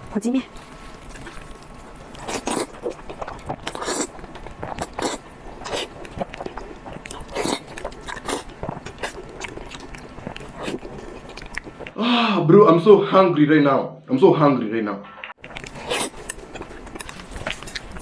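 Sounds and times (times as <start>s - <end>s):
person chewing crunchy food: 0.6s - 12.0s, 15.4s - 18.0s.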